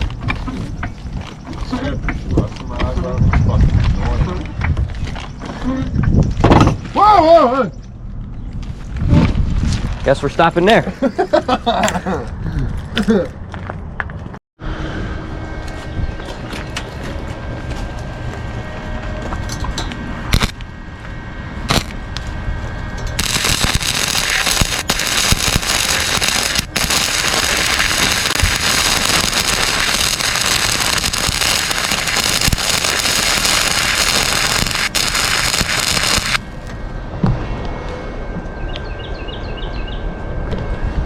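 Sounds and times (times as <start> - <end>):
electric welder crackling: 20.3 - 20.6, 21.7 - 22.0, 23.0 - 36.5.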